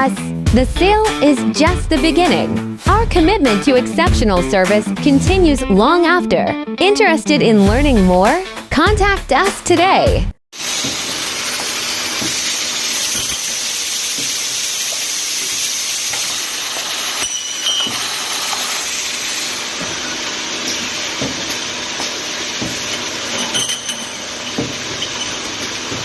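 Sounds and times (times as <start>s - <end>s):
hissing machine noise: 10.6s - 26.0s.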